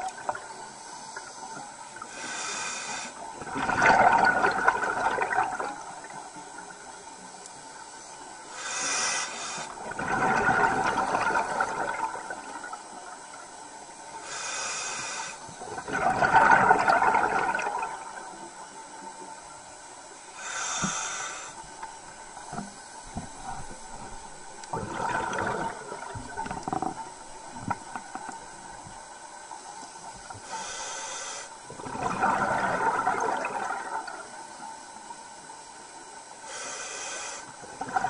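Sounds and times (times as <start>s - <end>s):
diver breathing through regulator: 2.1s - 3.2s, 8.5s - 9.8s, 14.2s - 15.4s, 20.3s - 21.7s, 30.4s - 31.6s, 36.5s - 37.6s
exhaled bubbles rushing: 3.4s - 6.1s, 9.8s - 12.8s, 15.6s - 18.2s, 22.0s - 29.0s, 31.7s - 34.4s, 37.8s - 38.0s.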